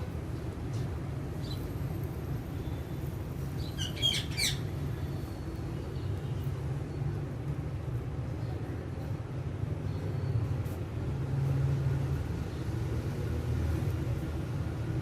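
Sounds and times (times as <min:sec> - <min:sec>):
parrot squawking: 0:03.8 - 0:04.7.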